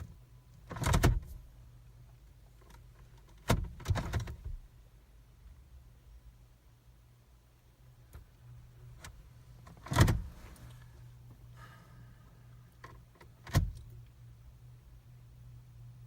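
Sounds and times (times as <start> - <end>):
gear selector clunks: 0.0 - 1.3, 9.0 - 10.9, 12.7 - 14.0
steady low hum: 0.0 - 16.0.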